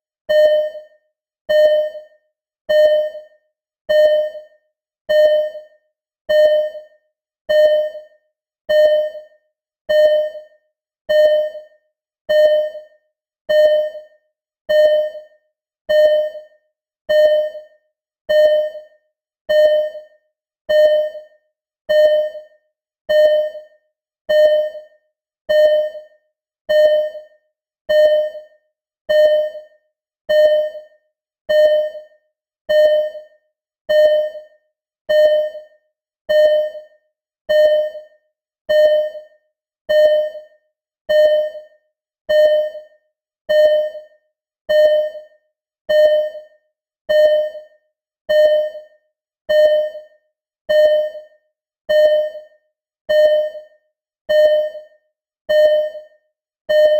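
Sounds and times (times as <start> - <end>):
heart monitor beeping: 0.3 - 0.9, 1.5 - 2.1, 2.7 - 3.3, 3.9 - 4.5, 5.1 - 5.7, 6.3 - 6.9, 7.5 - 8.1, 8.7 - 9.3, 9.9 - 10.5, 11.1 - 11.7, 12.3 - 12.9, 13.5 - 14.1, 14.7 - 15.3, 15.9 - 16.5, 17.1 - 17.7, 18.3 - 18.9, 19.5 - 20.1, 20.7 - 21.3, 21.9 - 22.5, 23.1 - 23.7, 24.3 - 24.9, 25.5 - 26.1, 26.7 - 27.3, 27.9 - 28.5, 29.1 - 29.7, 30.3 - 30.9, 31.5 - 32.1, 32.7 - 33.3, 33.9 - 34.5, 35.1 - 35.7, 36.3 - 36.9, 37.5 - 38.1, 38.7 - 39.3, 39.9 - 40.5, 41.1 - 41.7, 42.3 - 42.9, 43.5 - 44.1, 44.7 - 45.3, 45.9 - 46.5, 47.1 - 47.7, 48.3 - 48.9, 49.5 - 52.5, 53.1 - 53.7, 54.3 - 56.9.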